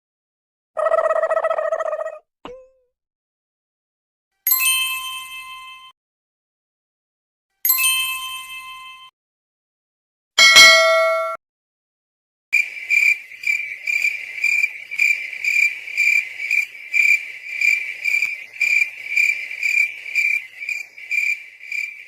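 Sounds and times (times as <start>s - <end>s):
metallic bell ding: 4.5s - 5.9s, 7.7s - 9.1s, 10.4s - 11.4s
crickets chirping: 12.6s - 22.0s.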